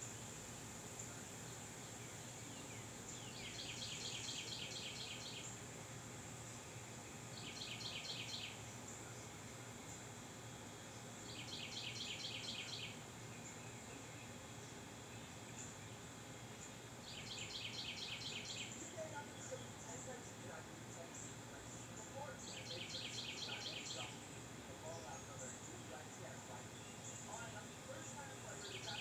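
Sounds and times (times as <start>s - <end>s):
faint high hiss: 0.0s - 29.0s.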